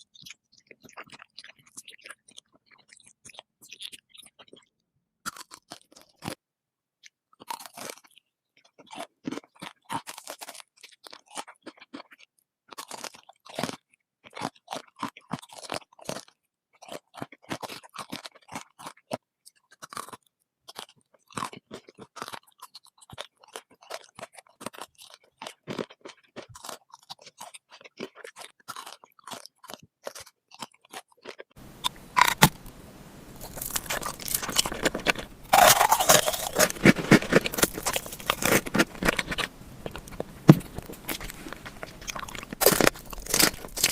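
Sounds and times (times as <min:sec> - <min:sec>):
chewing crunchy food: 0:00.0 - 0:43.9
background hiss: 0:31.6 - 0:43.9.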